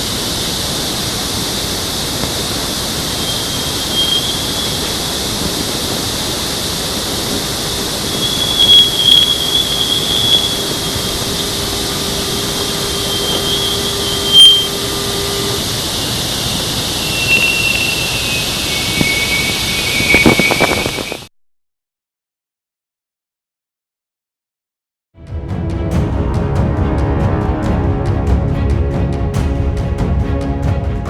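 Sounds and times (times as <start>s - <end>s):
low steady hum: 0.0s - 20.2s
steady hiss: 0.0s - 21.3s
whistling tones sliding lower: 2.3s - 21.3s.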